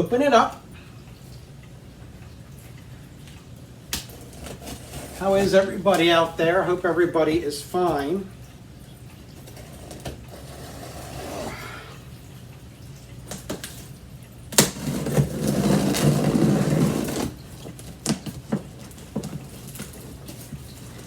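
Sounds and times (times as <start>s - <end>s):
cardboard rustling and scraping: 4.2s - 6.2s, 9.4s - 11.5s, 14.6s - 21.0s.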